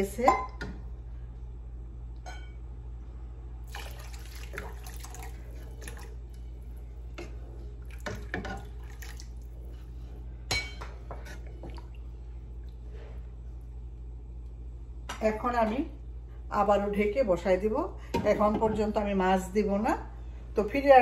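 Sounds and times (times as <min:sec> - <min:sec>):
steady low hum: 0:00.0 - 0:21.0
spoon stirring in pot: 0:04.5 - 0:12.2.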